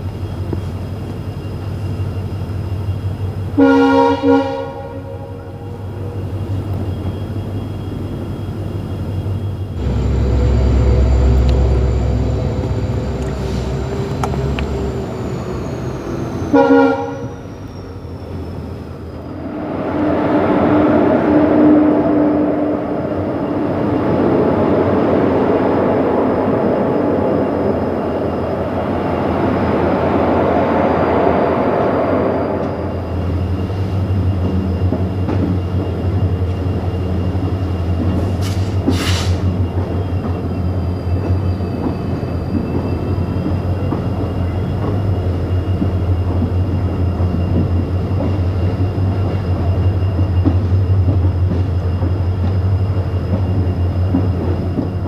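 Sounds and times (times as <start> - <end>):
train rumble with rail rattle: 0.0 - 55.0
rushing noise: 9.8 - 34.4.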